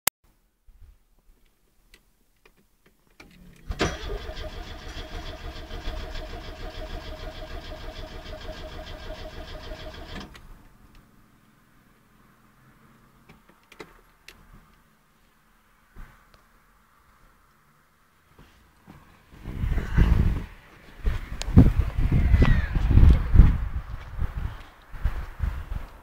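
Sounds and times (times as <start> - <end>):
starter motor cranking engine: 3.7 - 10.4.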